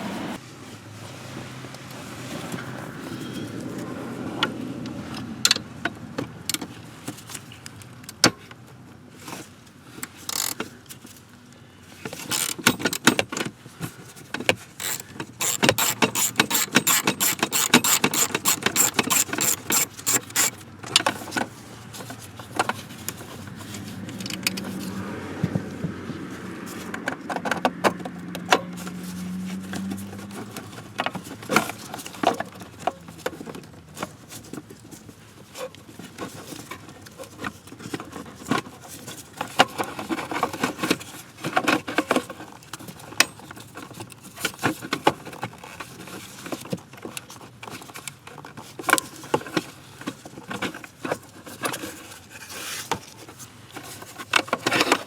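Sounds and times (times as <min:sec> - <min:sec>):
metallic clicks and clinks: 0:14.8 - 0:20.6
rapid clicking: 0:14.8 - 0:20.6.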